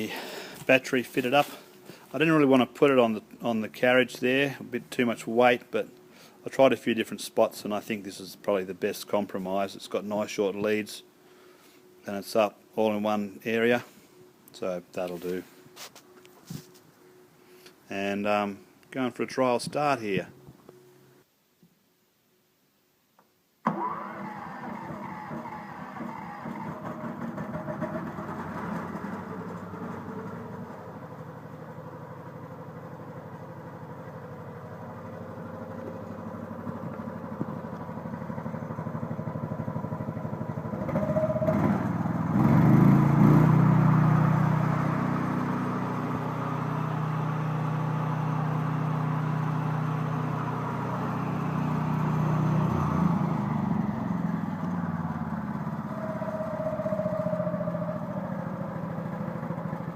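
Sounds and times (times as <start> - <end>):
sawmill engine running and revving: 23.7 - 59.9.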